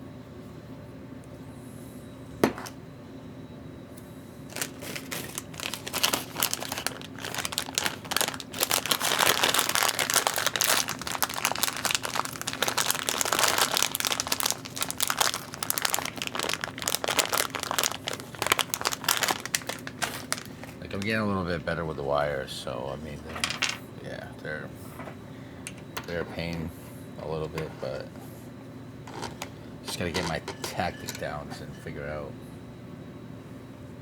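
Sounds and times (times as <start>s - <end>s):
plastic crinkling: 4.5s - 21.3s.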